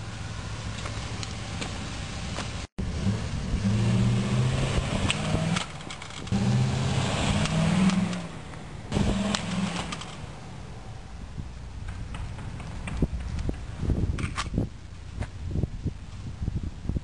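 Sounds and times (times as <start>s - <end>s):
vehicle engine humming: 0.0s - 16.9s
scattered clicks: 9.3s - 10.2s.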